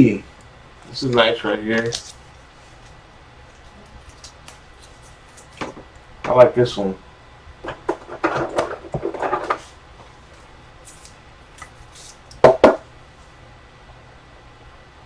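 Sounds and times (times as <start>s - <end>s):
cards and packaging rustling: 1.0s - 5.9s.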